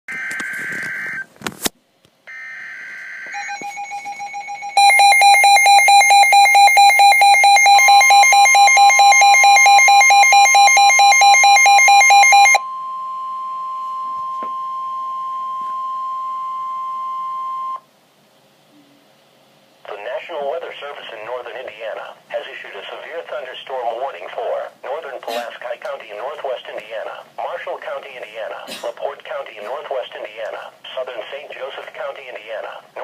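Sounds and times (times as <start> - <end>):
rapid alarm beeping: 2.3 - 17.8
steady warning alarm tone: 2.3 - 17.8.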